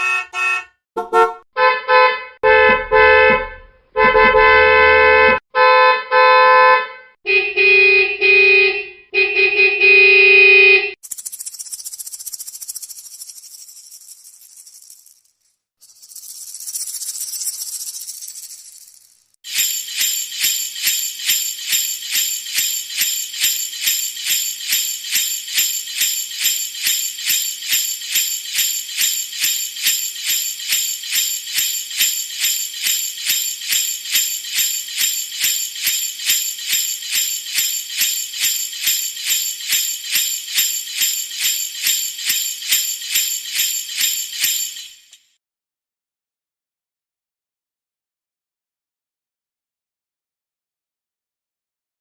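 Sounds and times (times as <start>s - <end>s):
jingle bells shaken: 11.0s - 45.4s.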